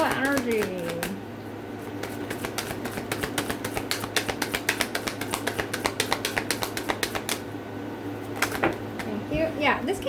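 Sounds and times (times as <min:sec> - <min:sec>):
cards being shuffled: 0:00.0 - 0:01.2, 0:01.8 - 0:07.4, 0:08.3 - 0:08.8.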